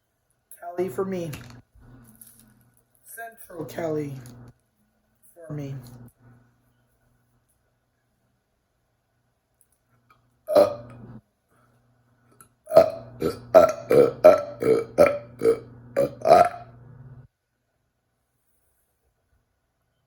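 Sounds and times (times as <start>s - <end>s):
person burping: 10.5s - 11.1s, 12.6s - 16.7s.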